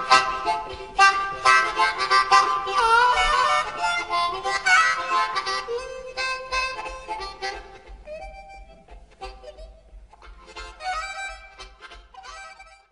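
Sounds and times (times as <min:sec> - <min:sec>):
instrumental music with bending notes: 0:00.0 - 0:12.9.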